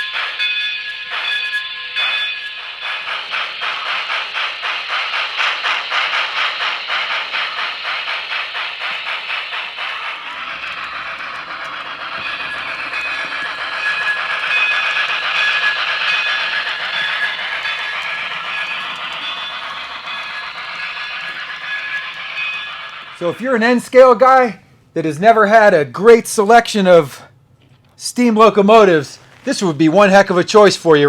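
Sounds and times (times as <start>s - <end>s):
steam hiss: 0.0s - 23.8s
steam locomotive chuffing: 0.0s - 27.2s.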